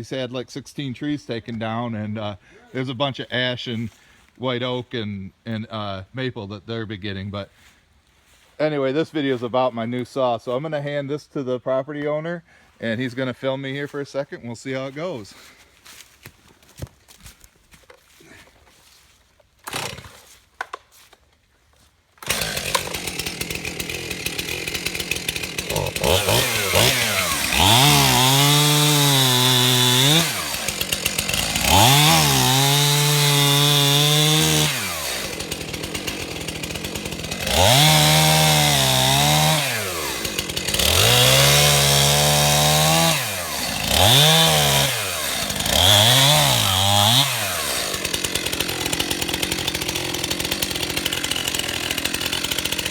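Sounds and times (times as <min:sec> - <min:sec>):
chainsaw revving and idling: 0:19.6 - 0:20.4, 0:22.2 - 0:52.9.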